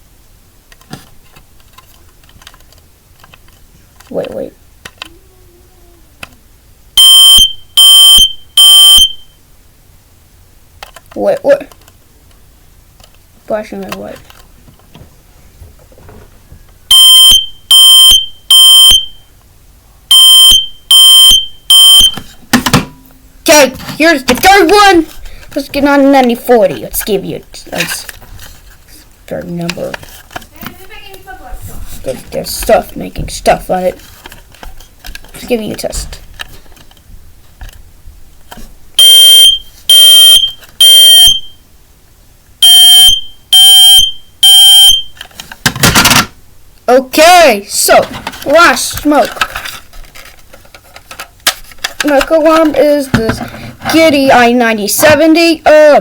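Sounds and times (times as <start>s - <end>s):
smoke alarm shrill beeps: 7.0s - 9.4s, 16.9s - 19.3s, 20.1s - 22.2s, 39.0s - 41.6s, 42.6s - 45.2s.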